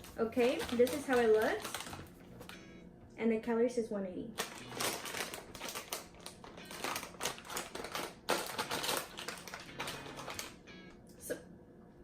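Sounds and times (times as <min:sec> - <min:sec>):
plastic chip bag crinkling: 0:00.0 - 0:02.6, 0:04.3 - 0:10.6.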